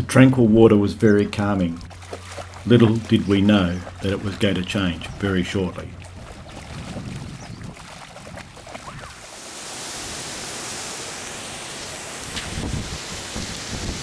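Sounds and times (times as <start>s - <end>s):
running water: 0.0s - 14.0s
rain hissing: 9.0s - 14.0s.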